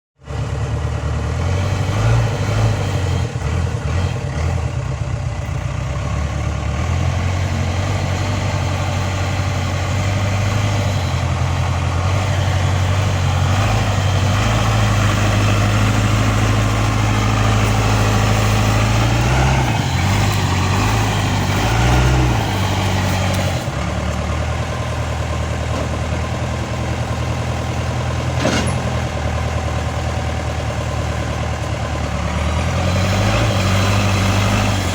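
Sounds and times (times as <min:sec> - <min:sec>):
diesel engine running: 0:00.2 - 0:34.9.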